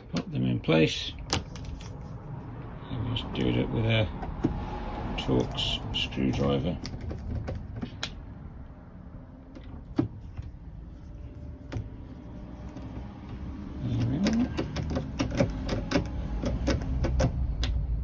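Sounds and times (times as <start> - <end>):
screwdriver clicks and scraping: 12.6 - 17.8.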